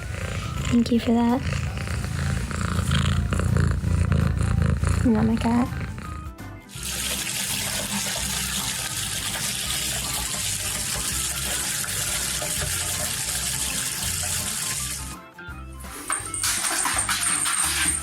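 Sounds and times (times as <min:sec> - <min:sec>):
running water rushing: 0:06.7 - 0:15.1.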